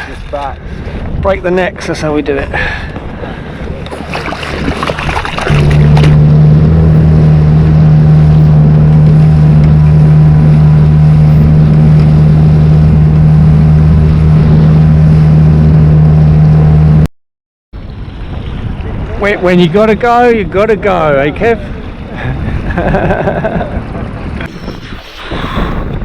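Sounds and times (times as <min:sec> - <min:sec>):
outboard motor running: 0:02.6 - 0:17.1.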